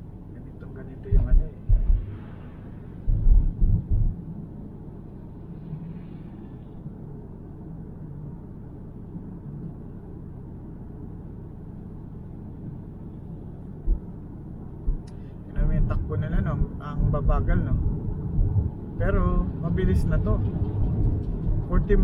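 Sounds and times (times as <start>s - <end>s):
car tyre and engine rumble: 0.0s - 22.0s
low thumps: 1.0s - 4.2s, 14.8s - 16.0s, 17.2s - 18.8s.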